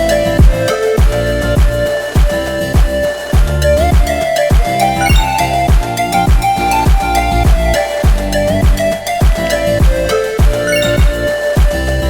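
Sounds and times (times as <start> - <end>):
electronic music with kick drum: 5.0 - 6.4, 10.4 - 11.3.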